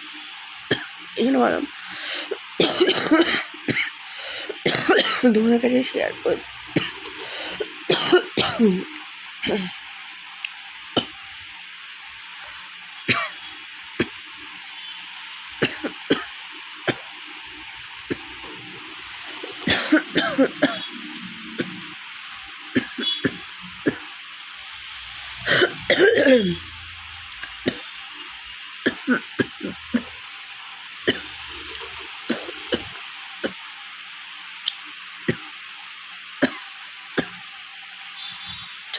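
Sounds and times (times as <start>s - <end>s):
woman coughing: 2.2s - 5.4s, 6.8s - 9.7s, 13.1s - 13.4s, 15.6s - 16.3s, 19.6s - 20.9s, 25.5s - 26.6s, 28.9s - 30.1s.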